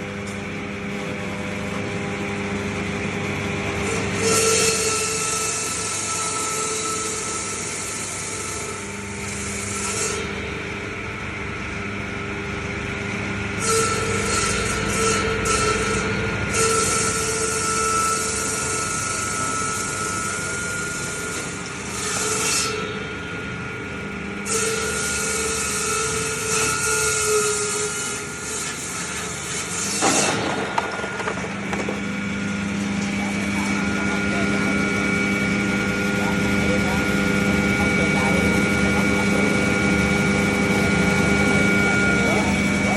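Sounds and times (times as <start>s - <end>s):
machine hum: 18.3s - 42.9s.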